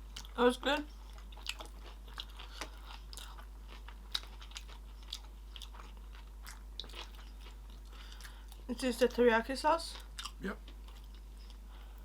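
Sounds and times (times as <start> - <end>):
mouth chewing clicks and smacks: 1.1 - 8.6, 10.0 - 11.6.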